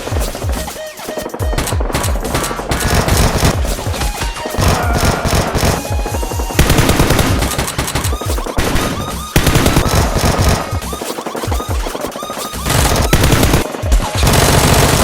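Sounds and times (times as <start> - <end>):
background music: 0.0 - 15.0
automatic gunfire: 2.3 - 3.6, 6.6 - 10.7, 12.7 - 15.0.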